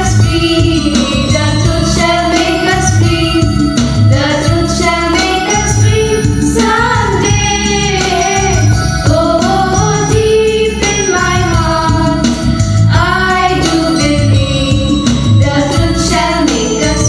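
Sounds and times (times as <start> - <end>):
instrumental accompaniment: 0.0 - 17.0
students singing a prayer song: 4.5 - 12.2, 12.9 - 14.5.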